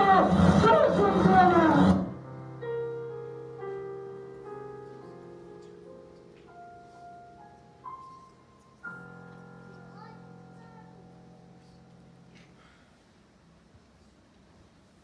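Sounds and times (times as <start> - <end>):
slow soft piano: 0.0 - 15.0.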